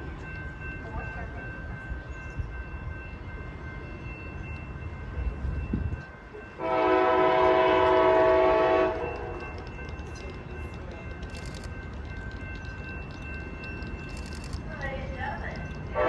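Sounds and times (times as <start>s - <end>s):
diesel locomotive rumbling: 0.0s - 16.0s
multi-chime air horn blast: 6.6s - 9.4s.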